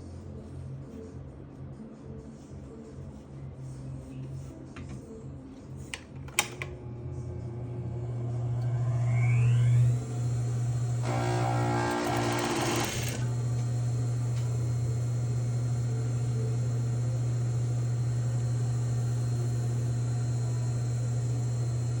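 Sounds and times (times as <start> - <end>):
sewing machine running: 10.8 - 13.9.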